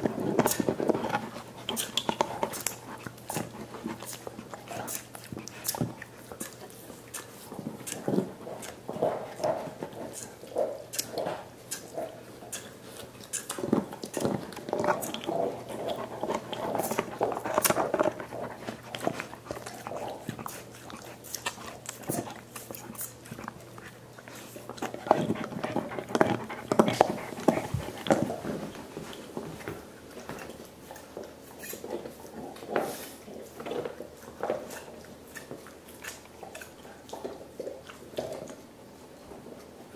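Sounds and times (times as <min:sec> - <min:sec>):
teeth clicking on bone: 0:00.0 - 0:28.4, 0:33.4 - 0:38.6
dogs slurping and licking: 0:00.0 - 0:39.9.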